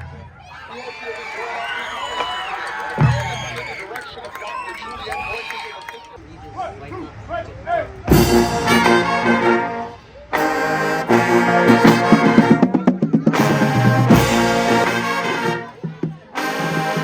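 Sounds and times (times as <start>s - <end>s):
marching band brass chords: 0.0s - 0.4s, 6.5s - 17.0s.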